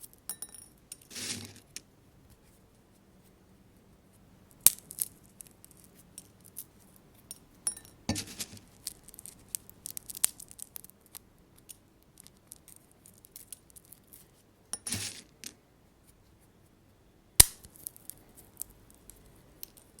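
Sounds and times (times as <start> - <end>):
seeds cracking: 8.1 - 14.2.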